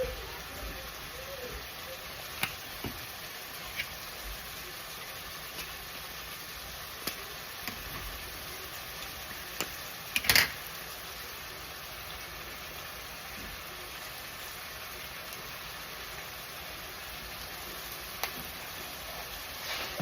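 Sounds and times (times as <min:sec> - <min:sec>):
steady hiss: 0:00.0 - 0:20.0
kitchen clicks and clatter: 0:10.1 - 0:10.6.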